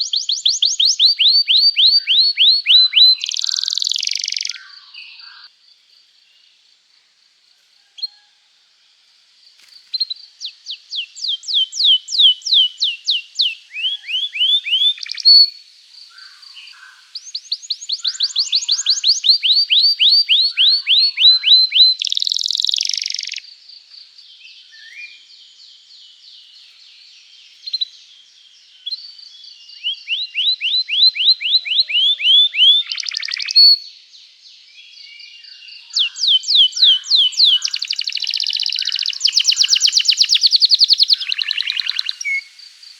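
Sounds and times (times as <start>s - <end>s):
canary singing with trills: 0.0s - 5.5s, 10.0s - 15.6s, 17.2s - 23.4s, 29.8s - 33.9s, 35.8s - 42.5s.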